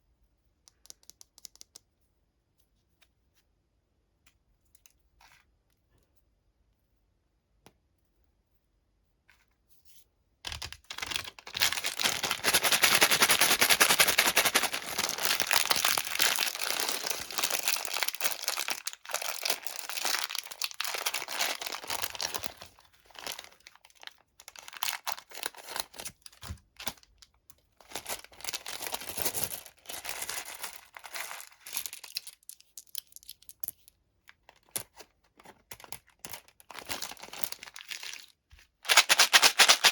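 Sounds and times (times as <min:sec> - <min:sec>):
candy wrapper tearing and crinkling: 0:10.5 - 0:27.2, 0:27.8 - 0:33.6, 0:35.5 - 0:39.9.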